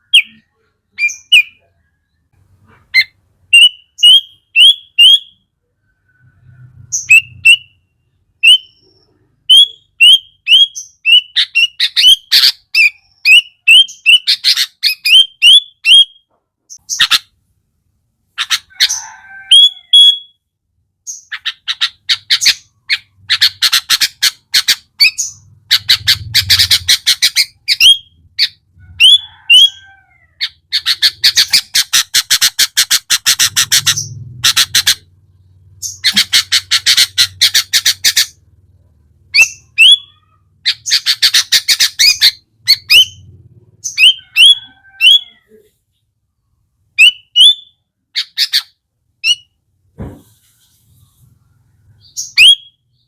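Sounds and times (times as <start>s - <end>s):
bulbul singing: 30.4s - 38.6s, 39.2s - 45.4s.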